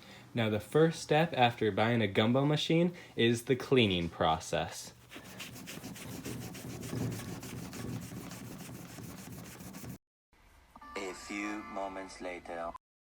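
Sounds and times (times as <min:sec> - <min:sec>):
rapid rubbing strokes: 0:05.0 - 0:10.0.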